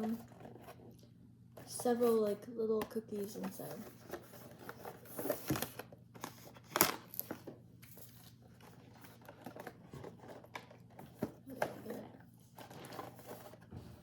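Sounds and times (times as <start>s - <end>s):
packaging crinkling and rustling: 3.0s - 13.7s.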